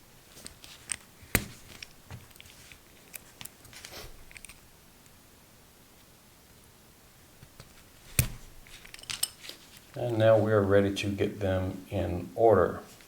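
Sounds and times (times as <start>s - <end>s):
scraping rustle: 0.3s - 4.5s
clicks and taps handling wires: 0.4s - 4.6s.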